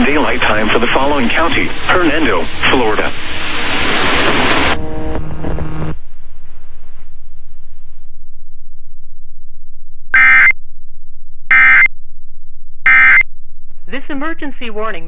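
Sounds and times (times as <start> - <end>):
harsh digital buzzing bursts: 12.9 - 13.2.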